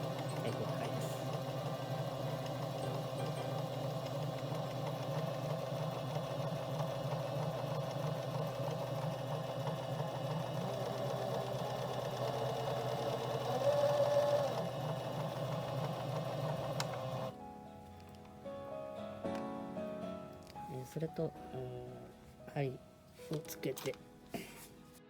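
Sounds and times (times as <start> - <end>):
sewing machine running: 0.0 - 17.3.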